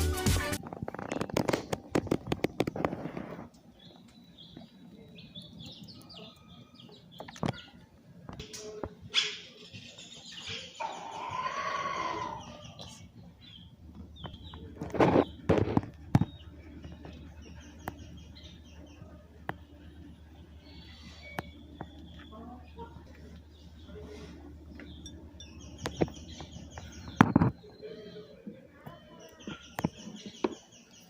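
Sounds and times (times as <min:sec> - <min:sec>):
small birds chirping: 0:00.6 - 0:31.0.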